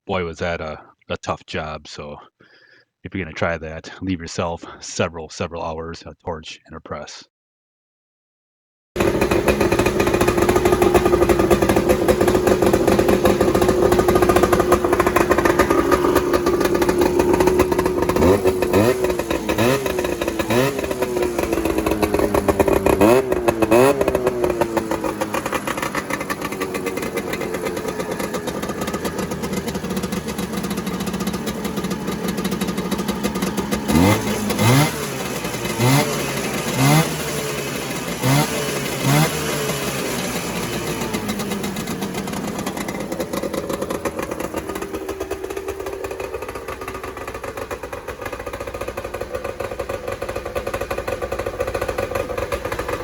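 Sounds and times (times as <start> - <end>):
snowmobile engine revving: 9.0 - 47.3.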